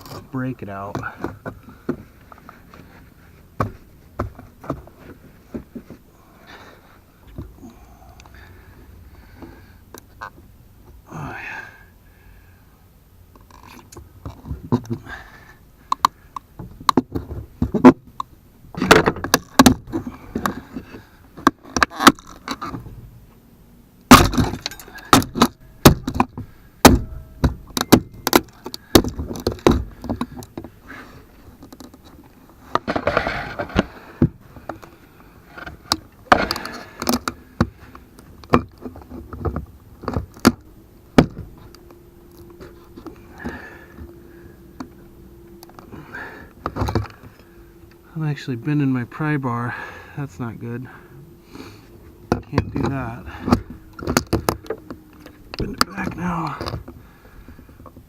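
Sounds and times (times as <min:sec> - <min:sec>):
metal scraping: 0:32.0 - 0:34.6.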